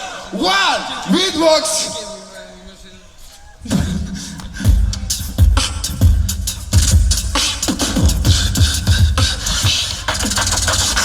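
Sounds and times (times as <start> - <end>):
beatboxing: 3.2 - 11.0.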